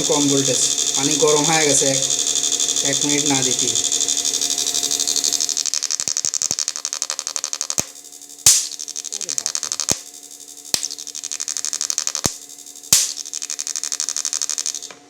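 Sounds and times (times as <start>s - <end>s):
high-pitched pulsing buzz: 0.0s - 15.0s
steady hum: 0.0s - 15.0s
sharp switching clicks: 8.5s - 10.0s, 10.7s - 15.0s.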